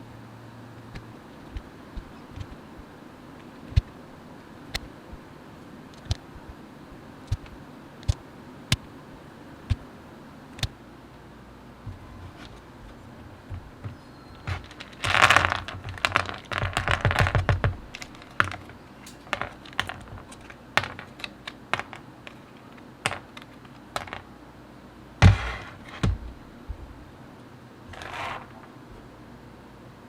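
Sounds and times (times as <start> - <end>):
heavier knock: 25.2 - 27.0.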